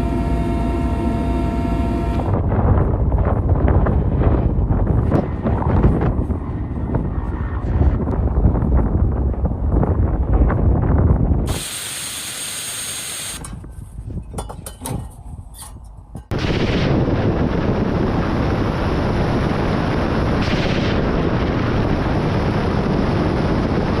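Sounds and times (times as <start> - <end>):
heavy low rumble: 0.0 - 11.9, 13.4 - 24.0
steady loud noise: 0.0 - 13.7, 16.2 - 24.0
hissing: 11.5 - 13.5
sharp cracks of gunfire: 20.4 - 21.2.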